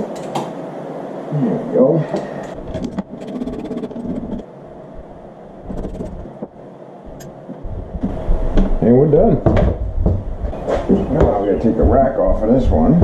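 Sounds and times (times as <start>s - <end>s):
quick run of ticks: 5.7s - 6.3s.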